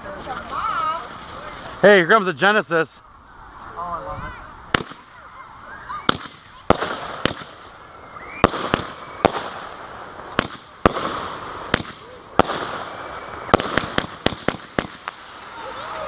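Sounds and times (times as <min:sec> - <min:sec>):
firework crackling hiss: 0:00.0 - 0:02.3, 0:03.1 - 0:16.0
firework bangs: 0:04.7 - 0:05.2, 0:05.9 - 0:16.0.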